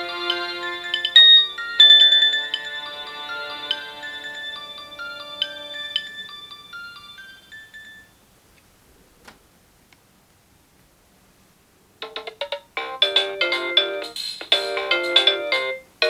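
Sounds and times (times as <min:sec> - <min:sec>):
phone ringtone melody: 0:00.0 - 0:08.2, 0:12.0 - 0:15.9.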